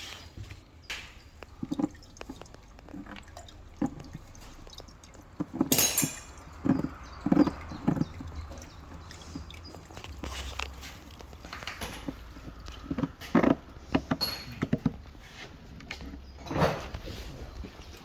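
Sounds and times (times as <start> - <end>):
oil dripping into bucket: 0.1 - 18.0
metal tools clinking: 5.6 - 6.8, 11.5 - 12.2, 14.2 - 14.7.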